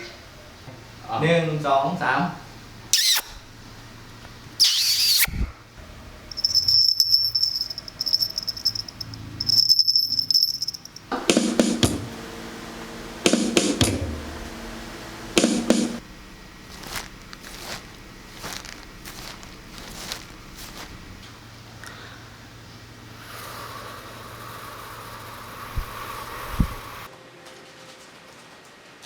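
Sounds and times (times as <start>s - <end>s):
harsh buzzy rasps: 2.9s - 3.4s, 4.6s - 5.4s
trilled cricket-like chirps: 6.3s - 11.1s.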